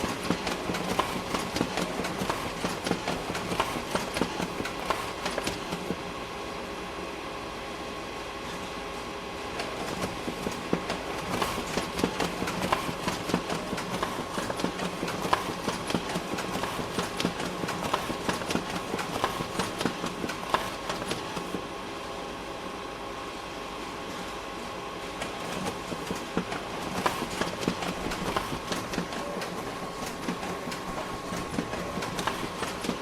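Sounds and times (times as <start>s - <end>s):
rapid irregular clicking and clattering: 0.0s - 6.0s, 9.6s - 21.6s, 25.2s - 33.0s
copy machine humming: 0.0s - 6.1s, 9.6s - 21.6s, 25.2s - 33.0s.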